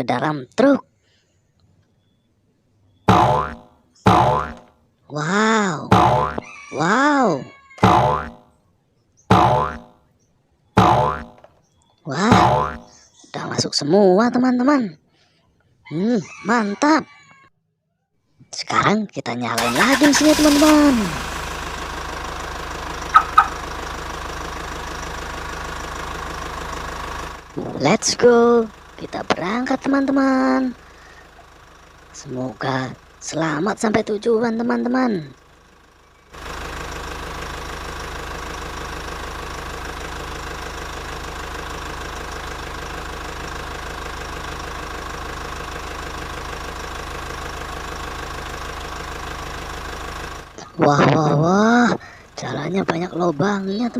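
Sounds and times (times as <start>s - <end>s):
toy truck engine rattle: 19.6s - 22.1s, 22.8s - 23.6s
diesel truck engine idling: 19.6s - 50.8s, 51.4s - 53.9s
short high chirps: 23.1s - 23.6s.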